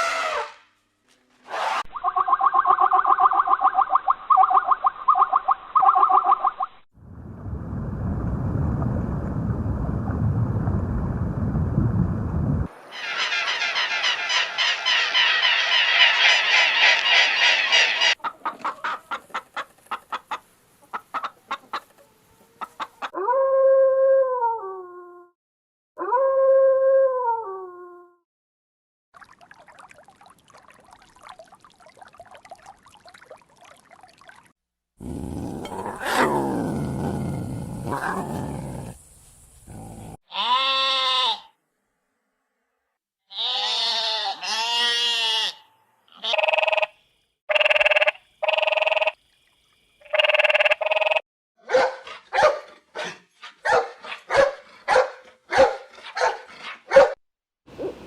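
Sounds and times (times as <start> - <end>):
chickens clucking: 13.0 - 23.2
deep rough animal growl: 35.0 - 39.0, 39.7 - 40.2
animal bleating call: 40.3 - 41.6, 43.3 - 46.6.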